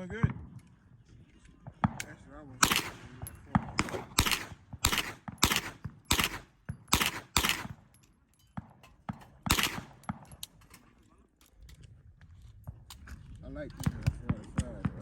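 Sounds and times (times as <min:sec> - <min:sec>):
handgun shots echoing: 0:01.9 - 0:08.0, 0:08.6 - 0:10.6.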